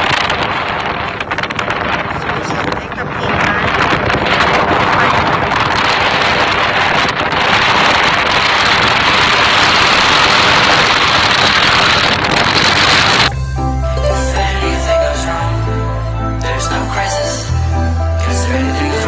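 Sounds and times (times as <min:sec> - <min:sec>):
strong wind rushing: 0:00.0 - 0:13.8.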